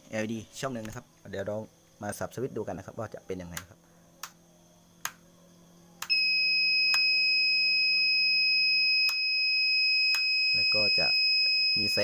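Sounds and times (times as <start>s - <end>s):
high-pitched alarm buzzer beep: 6.1s - 12.0s
transmitter switch clicks: 6.9s - 7.1s, 9.0s - 9.2s, 10.1s - 10.3s.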